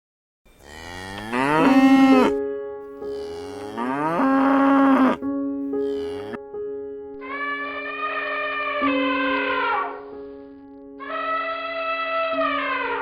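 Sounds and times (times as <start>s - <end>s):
rising animal calls: 0.6s - 2.4s, 3.0s - 5.2s, 5.8s - 6.4s.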